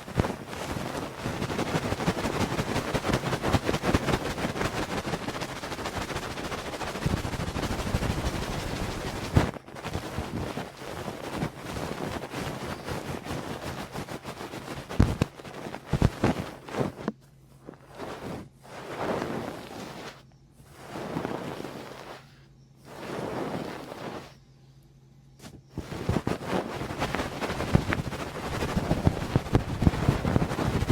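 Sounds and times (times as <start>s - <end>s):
crackling and clicking ear sounds: 0.0s - 17.2s, 25.4s - 30.9s
rubbing and rustling noise: 0.0s - 24.5s, 25.4s - 30.9s.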